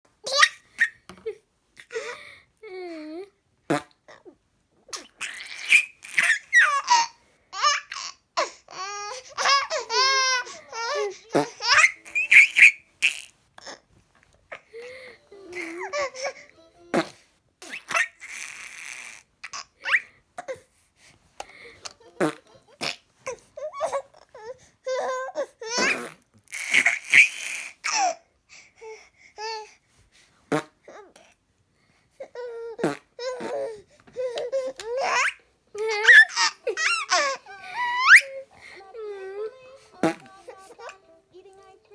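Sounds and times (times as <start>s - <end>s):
baby laughing: 0.2s - 2.1s, 5.0s - 13.8s, 14.6s - 20.6s, 32.4s - 41.9s
fart noise: 3.7s - 4.1s, 11.3s - 11.9s, 16.9s - 19.2s, 22.2s - 23.0s, 30.5s - 30.8s, 32.8s - 33.7s, 40.0s - 40.4s.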